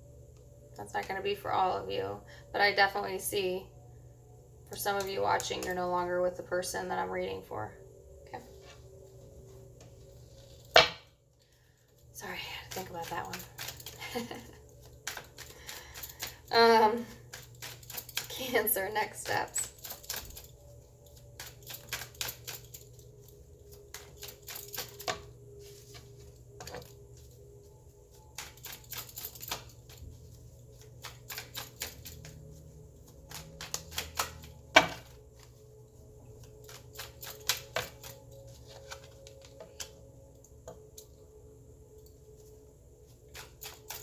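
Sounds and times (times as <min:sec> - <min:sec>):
cards being shuffled: 0:37.1 - 0:39.9.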